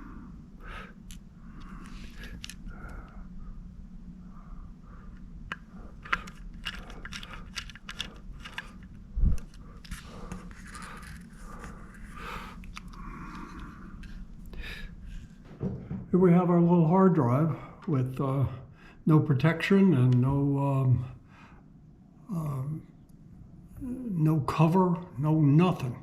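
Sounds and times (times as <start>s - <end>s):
metal parts clicking and scraping: 5.5s - 11.7s
dull thump: 15.4s - 16.1s.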